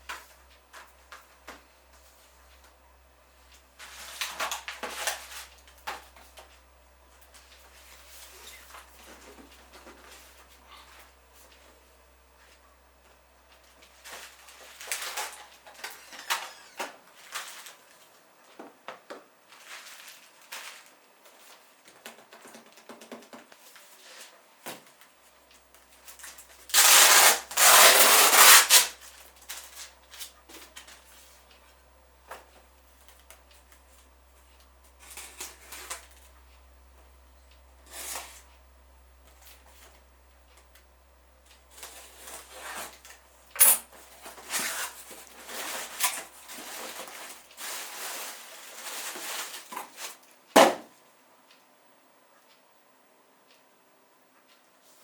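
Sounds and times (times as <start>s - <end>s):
packaging rubbing and rustling: 26.7s - 29.8s, 44.2s - 50.2s.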